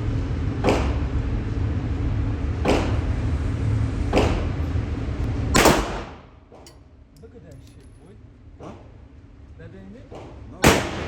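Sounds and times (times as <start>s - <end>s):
gunshots: 5.6s - 6.3s, 10.6s - 11.0s.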